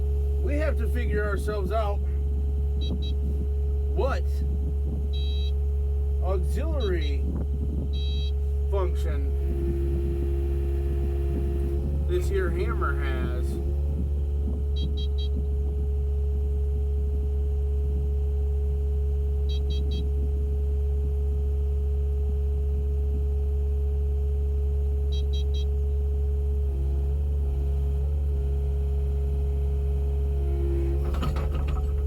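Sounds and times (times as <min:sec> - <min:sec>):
diesel engine idling: 0:00.0 - 0:32.0
rapid high beeps: 0:05.1 - 0:05.5, 0:08.0 - 0:08.3.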